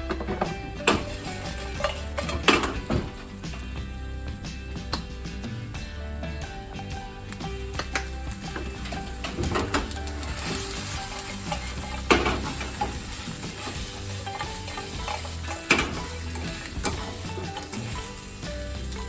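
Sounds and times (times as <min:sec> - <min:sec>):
food sizzling in a pan: 0:00.0 - 0:19.0
utensil knocking against pan: 0:07.7 - 0:18.0.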